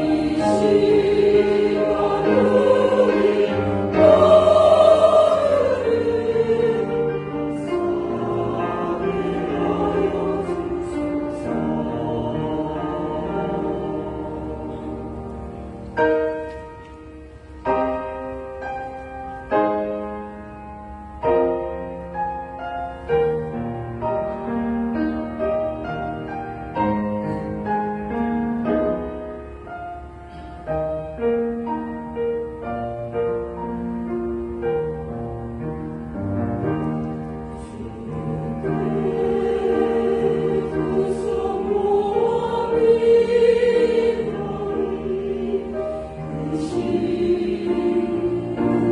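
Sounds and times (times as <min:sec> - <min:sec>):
choir singing: 0:00.0 - 0:16.5, 0:36.9 - 0:48.9
piano chords: 0:00.0 - 0:48.9.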